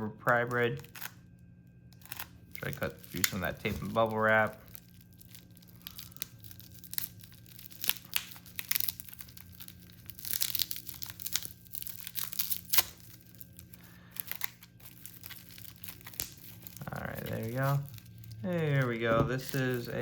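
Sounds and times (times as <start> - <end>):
faint low hum: 0.0 - 20.0
bubble wrap crinkling: 0.2 - 20.0
packing tape tearing: 0.3 - 1.2, 1.9 - 20.0.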